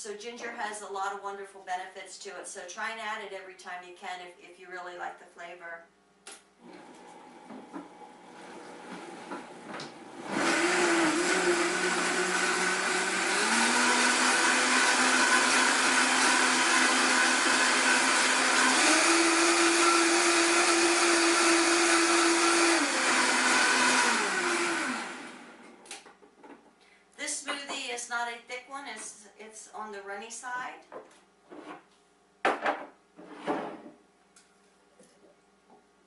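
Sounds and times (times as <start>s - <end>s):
blender motor running: 6.6s - 25.7s.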